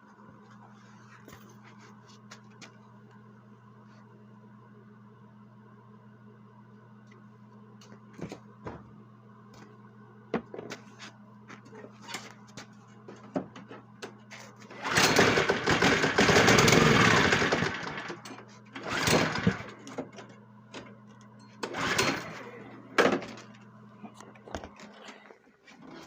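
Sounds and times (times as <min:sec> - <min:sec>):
snow blower engine sputtering: 0:14.7 - 0:20.0, 0:21.6 - 0:23.6
steady low hum: 0:19.5 - 0:26.0.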